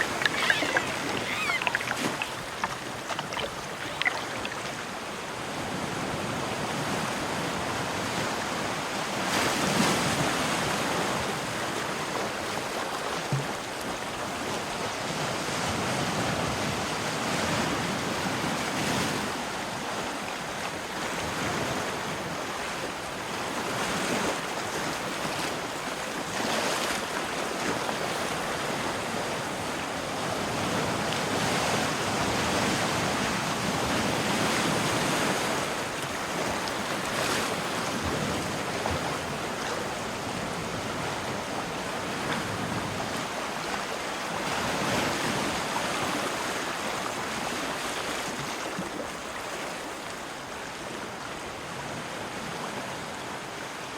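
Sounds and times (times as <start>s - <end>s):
ocean waves washing in: 0.0s - 13.3s.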